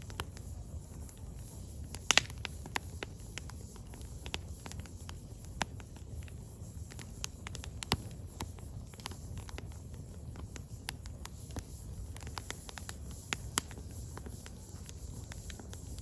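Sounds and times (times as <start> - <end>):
firewood crackling and popping: 0.0 - 16.0.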